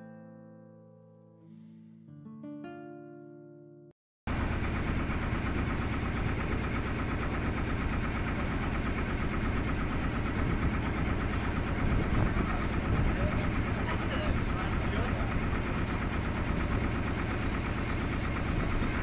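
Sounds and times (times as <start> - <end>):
boat engine running: 4.3 - 19.0
strummed acoustic guitar: 4.4 - 19.0.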